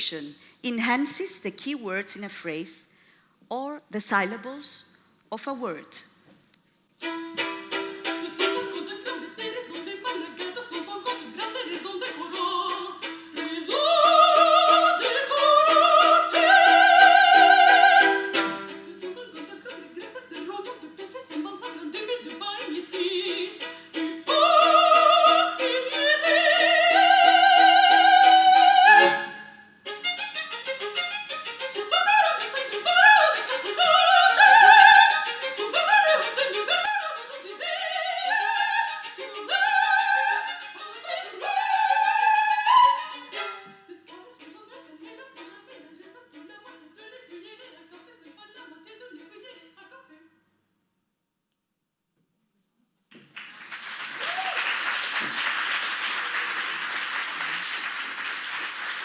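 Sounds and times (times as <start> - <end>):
string accompaniment: 7.0 - 48.6.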